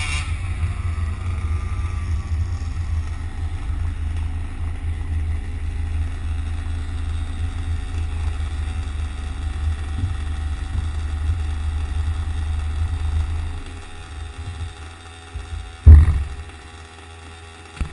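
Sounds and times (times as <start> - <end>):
low vehicle rumble: 0.0 - 17.1
loud thump: 15.4 - 16.6.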